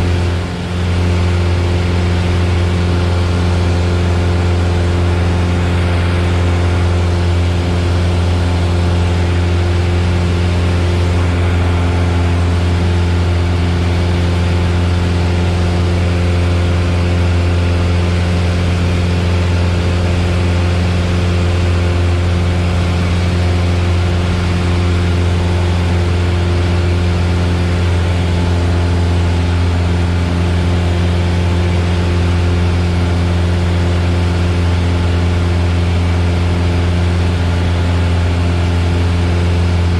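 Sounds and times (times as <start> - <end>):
airplane engine and propeller drone: 0.0 - 39.9.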